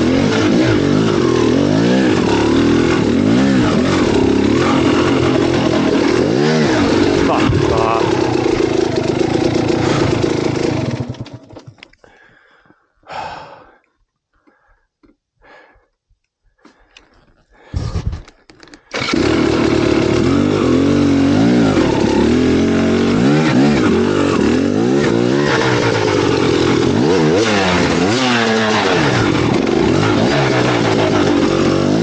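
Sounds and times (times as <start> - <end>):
motorcycle engine revving: 0.0 - 11.8, 18.9 - 32.0.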